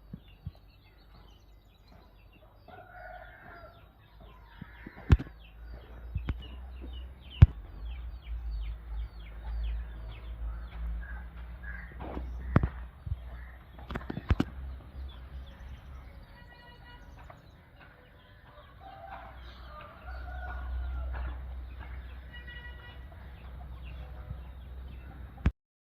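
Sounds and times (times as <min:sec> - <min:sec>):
chickens calling: 0:00.0 - 0:25.5
rooster crowing: 0:02.7 - 0:04.9, 0:18.6 - 0:21.4.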